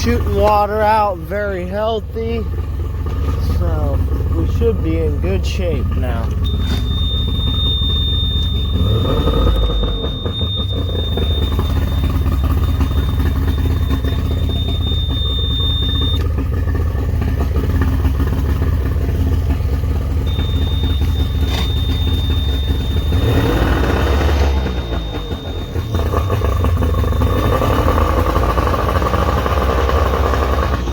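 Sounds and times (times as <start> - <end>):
outboard motor idling and revving: 0.0 - 30.9
high-pitched whine: 5.8 - 16.3, 20.3 - 28.5.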